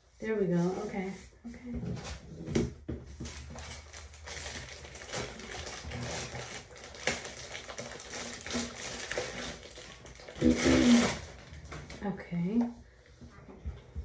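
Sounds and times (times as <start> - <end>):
packaging rustling: 3.2 - 12.0.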